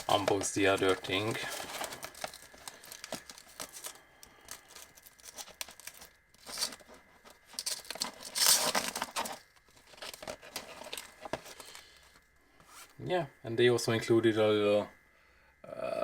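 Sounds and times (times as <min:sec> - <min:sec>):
plastic packaging crinkling: 0:00.0 - 0:12.0
packaging rustle: 0:00.0 - 0:12.1.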